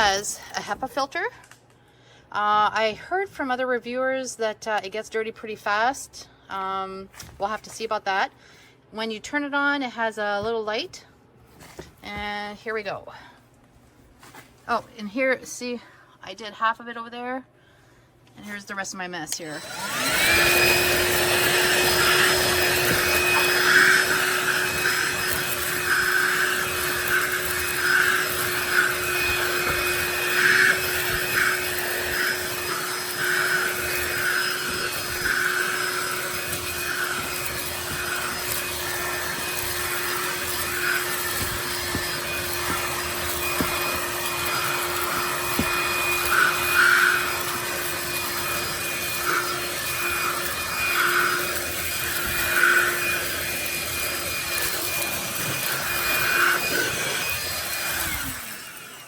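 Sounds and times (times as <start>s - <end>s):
handheld vacuum motor whine: 19.4s - 59.0s
brush scrubbing carpet: 19.9s - 58.8s.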